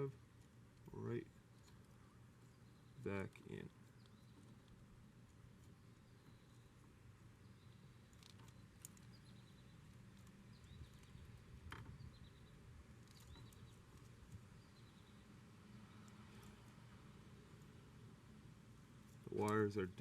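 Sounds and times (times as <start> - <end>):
faint bird chirps: 1.0 - 4.8, 5.8 - 16.7.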